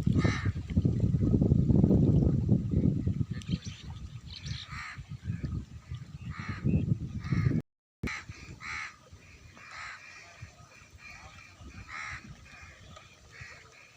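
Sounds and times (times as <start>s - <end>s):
birds harsh calls: 3.5s - 5.5s, 6.2s - 13.9s.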